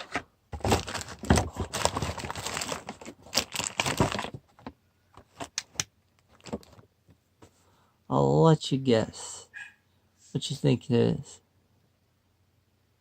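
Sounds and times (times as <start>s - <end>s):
rustling and crinkling handling noise: 0.0s - 7.8s.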